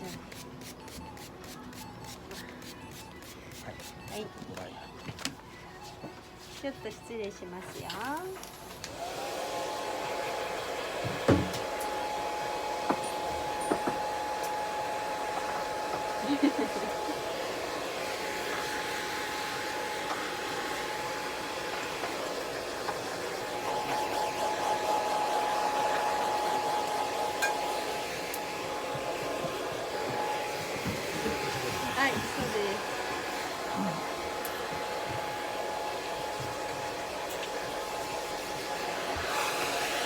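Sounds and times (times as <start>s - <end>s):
hair dryer running: 8.7s - 40.0s.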